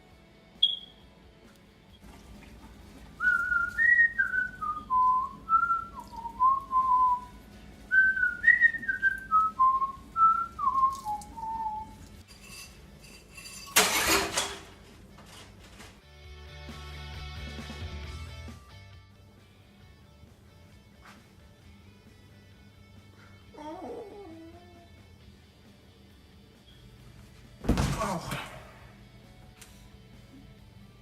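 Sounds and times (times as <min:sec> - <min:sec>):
person whistling a tune: 0:00.6 - 0:00.9, 0:03.2 - 0:12.0.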